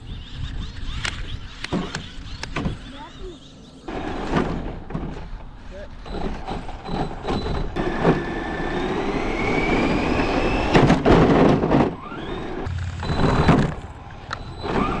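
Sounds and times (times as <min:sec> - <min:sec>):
electric motor whining: 0:06.8 - 0:11.0, 0:11.9 - 0:15.0
toy cars colliding: 0:10.4 - 0:13.9.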